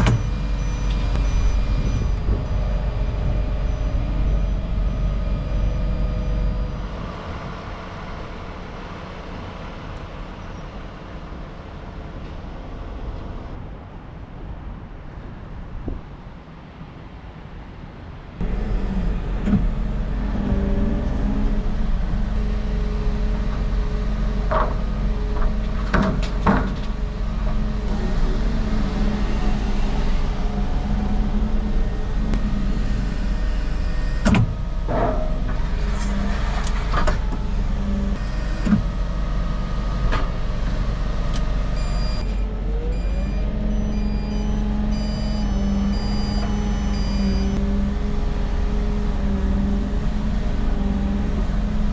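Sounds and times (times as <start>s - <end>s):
heavy vehicle engine running: 0.0s - 14.0s, 18.4s - 51.9s
knocks and clanks: 24.4s - 27.6s.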